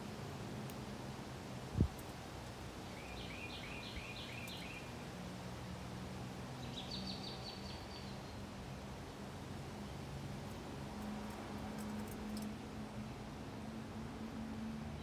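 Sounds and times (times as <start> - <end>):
songbird singing: 2.8 - 5.0, 6.5 - 8.5.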